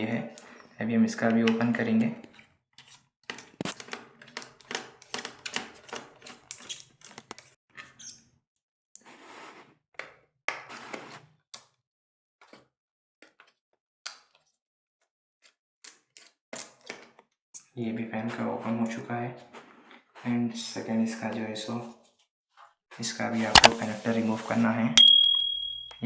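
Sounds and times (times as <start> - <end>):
screwdriver clicking and tapping: 23.5 - 23.8.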